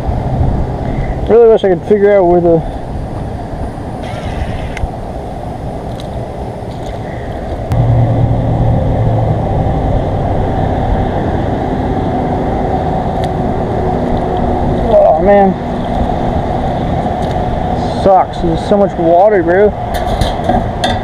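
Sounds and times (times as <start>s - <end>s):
compressor low steady hum: 7.6s - 14.8s.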